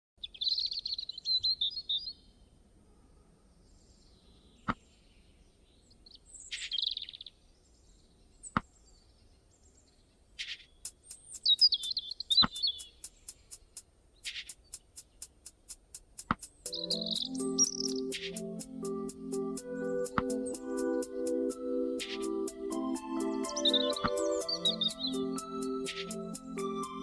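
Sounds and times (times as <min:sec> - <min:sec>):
songbirds chirping: 0:00.2 - 0:27.0
sharp clicks: 0:10.4 - 0:18.7
fast high-pitched ticking: 0:10.8 - 0:27.0.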